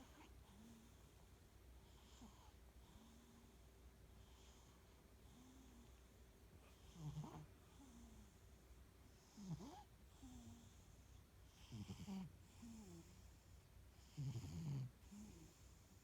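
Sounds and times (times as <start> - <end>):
cat snoring: 1.8 - 3.5, 6.7 - 8.4, 9.2 - 10.9, 11.5 - 13.4, 14.0 - 16.0.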